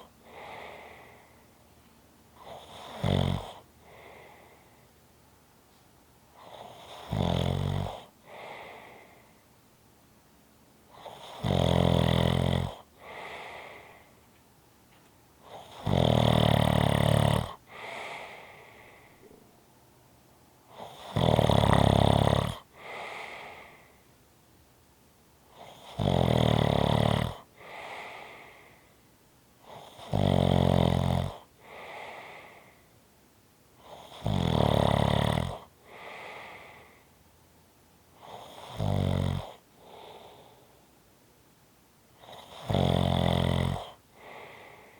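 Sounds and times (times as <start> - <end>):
person snoring: 2.4 - 4.6, 6.4 - 9.3, 10.9 - 14.1, 15.5 - 19.3, 20.7 - 23.9, 25.6 - 28.7, 29.7 - 32.8, 33.8 - 37.0, 38.2 - 40.7, 42.2 - 44.9.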